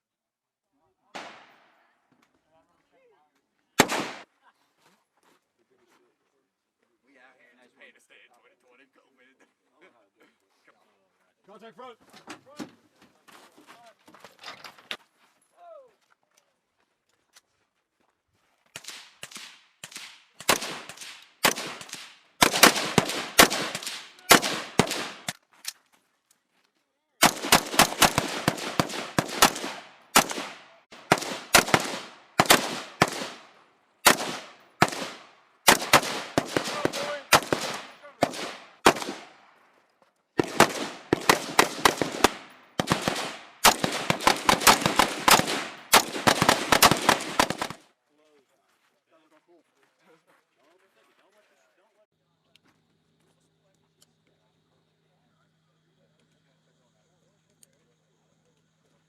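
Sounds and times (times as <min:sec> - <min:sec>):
rifle and automatic gunfire: 0:03.8 - 0:04.2, 0:18.8 - 0:25.3, 0:27.2 - 0:39.4, 0:40.4 - 0:47.8.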